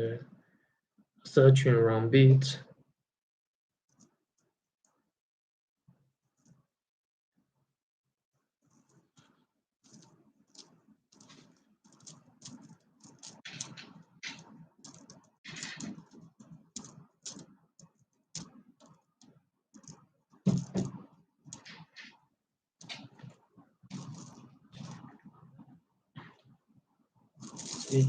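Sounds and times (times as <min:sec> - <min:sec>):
small clicks and taps: 0:08.8 - 0:22.2.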